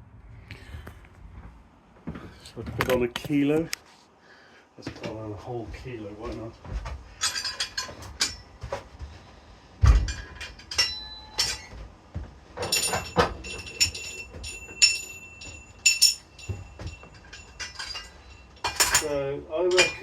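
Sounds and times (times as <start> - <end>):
weight plates clinking: 7.1 - 8.8, 9.8 - 11.9, 12.5 - 20.0
heavy thud: 9.8 - 10.3.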